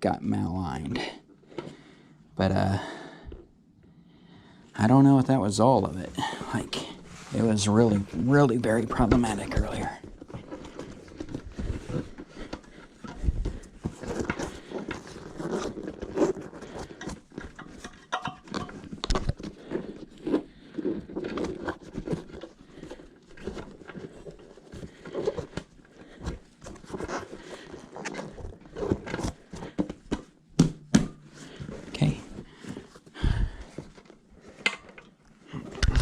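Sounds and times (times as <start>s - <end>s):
rubber tire rubbing against rim: 6.3s - 17.4s.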